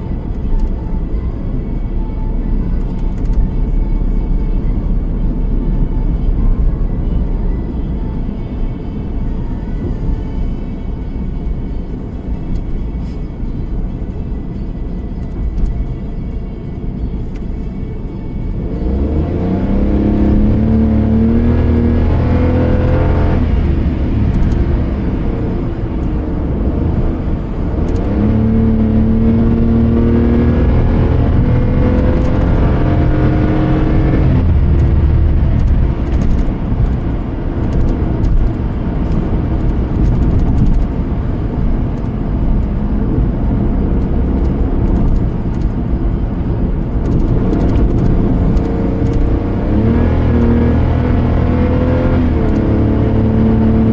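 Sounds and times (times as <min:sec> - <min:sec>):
road rumble: 0:00.0 - 0:53.9
car engine accelerating: 0:18.4 - 0:53.9.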